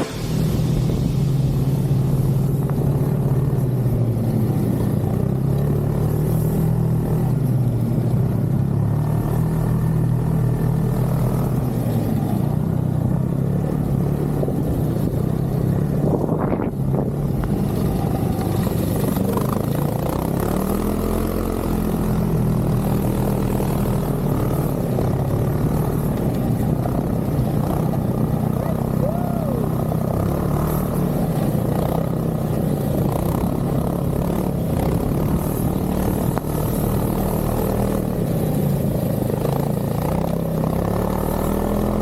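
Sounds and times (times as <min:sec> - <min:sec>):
short sharp sound: 0:00.0 - 0:04.0
snowmobile engine running: 0:00.0 - 0:42.0.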